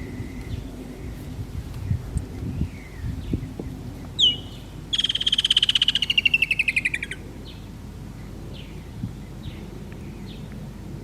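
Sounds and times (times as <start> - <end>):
kingfisher calling with falling trill: 4.2 - 7.2.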